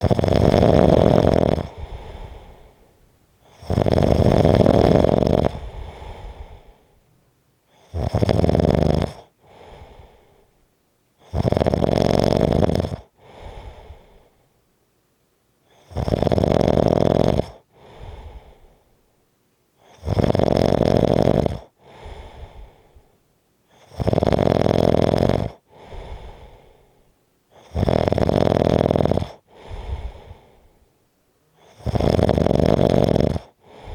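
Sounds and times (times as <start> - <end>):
person snoring: 0.0 - 2.8, 3.4 - 6.9, 7.7 - 10.2, 11.2 - 14.2, 15.7 - 18.6, 19.9 - 22.7, 23.8 - 26.8, 27.6 - 30.7, 31.6 - 33.9
quiet breath sound: 0.0 - 8.3, 9.0 - 11.5, 12.8 - 14.8, 15.6 - 16.0, 17.4 - 20.2, 21.5 - 24.5, 25.3 - 28.2, 28.8 - 33.9.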